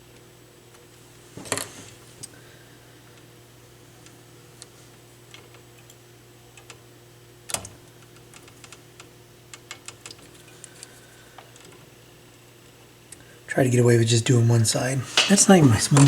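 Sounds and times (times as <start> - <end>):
steady low hum: 10.1 - 16.0.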